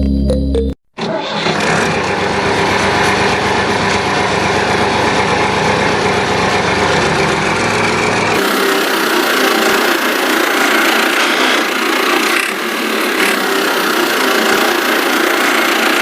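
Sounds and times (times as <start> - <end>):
small electric motor buzzing: 8.4 - 16.0.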